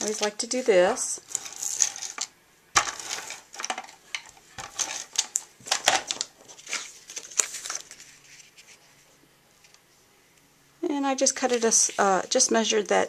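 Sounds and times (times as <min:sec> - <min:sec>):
paper rustling and crinkling: 0:01.2 - 0:09.7, 0:11.2 - 0:12.2.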